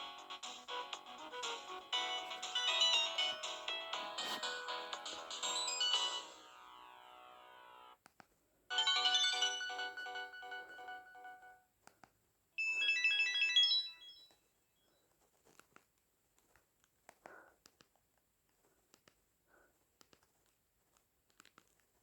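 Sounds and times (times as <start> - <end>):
phone ringtones from small speaker: 8.7 - 11.6, 12.6 - 14.4
faint clicks: 15.4 - 19.2, 19.9 - 22.0.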